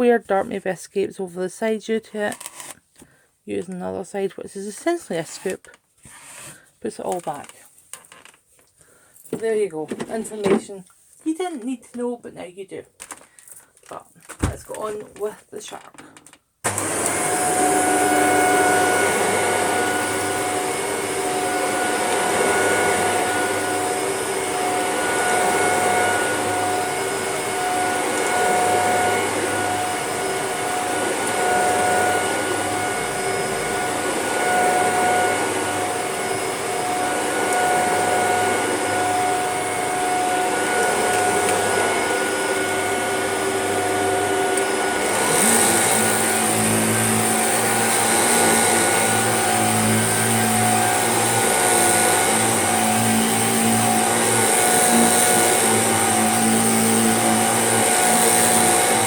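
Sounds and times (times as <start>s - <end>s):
vacuum cleaner on carpet: 16.6s - 59.0s.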